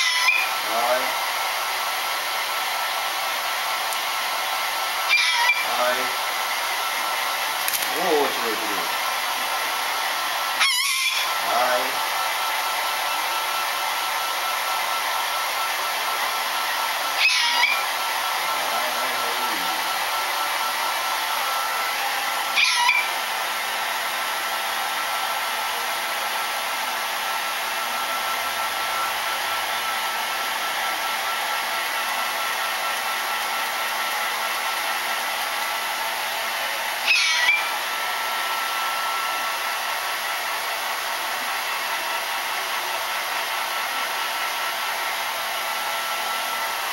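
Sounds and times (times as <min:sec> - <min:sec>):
hair dryer blowing: 0:00.0 - 0:46.9
bird giving sharp calls: 0:05.1 - 0:05.7, 0:10.6 - 0:11.4, 0:17.2 - 0:17.9, 0:22.6 - 0:23.1, 0:37.1 - 0:37.7.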